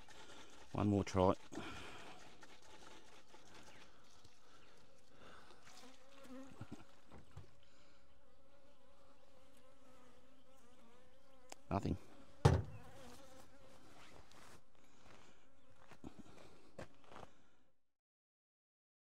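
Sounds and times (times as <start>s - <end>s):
honey bees buzzing: 4.5s - 13.8s.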